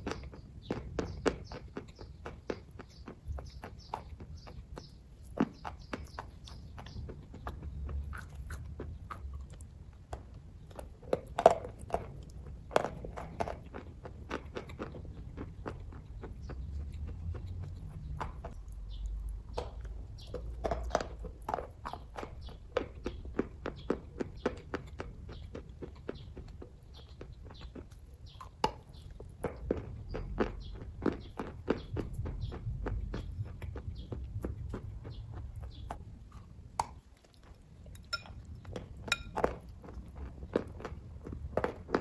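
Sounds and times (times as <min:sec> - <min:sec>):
person chewing food: 0:00.0 - 0:42.0
wet mouth clicks and smacks: 0:34.4 - 0:40.0.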